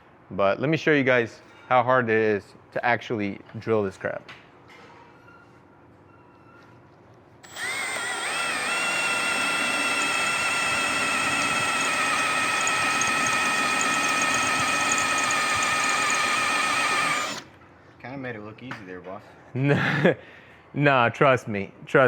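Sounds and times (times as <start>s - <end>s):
power drill boring into steel: 7.4s - 17.5s.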